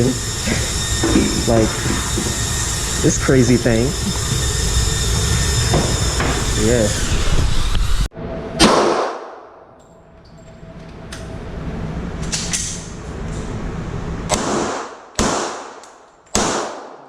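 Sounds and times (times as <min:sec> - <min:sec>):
gunshots echoing indoors: 0:08.5 - 0:09.8, 0:14.3 - 0:17.0.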